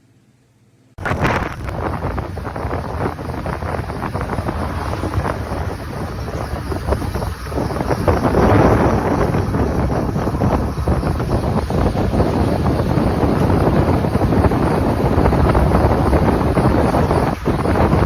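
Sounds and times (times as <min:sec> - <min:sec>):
wind buffeting microphone: 0:01.0 - 0:18.0.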